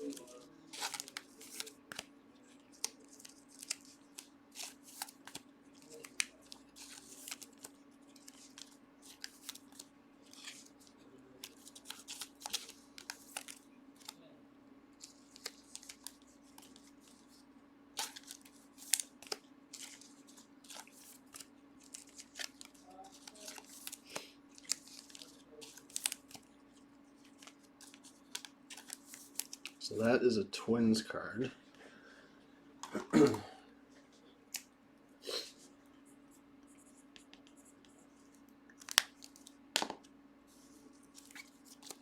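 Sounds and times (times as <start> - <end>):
cards and wrappers rustling: 0.0 - 14.2, 15.0 - 30.1, 38.2 - 42.0.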